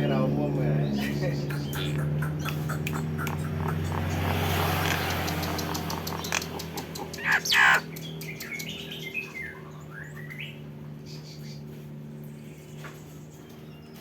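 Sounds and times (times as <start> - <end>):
myna bird calling and whistling: 0.9 - 11.6.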